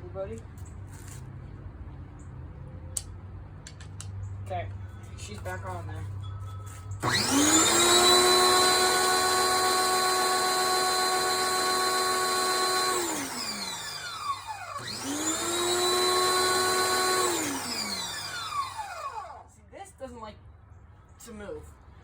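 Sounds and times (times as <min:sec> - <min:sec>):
pressure washer motor whining: 0:07.0 - 0:19.4.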